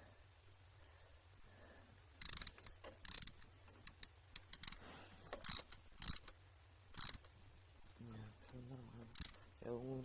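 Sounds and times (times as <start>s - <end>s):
metallic clicks and knocks of hand tools: 2.2s - 6.4s, 7.0s - 7.3s, 9.1s - 9.5s.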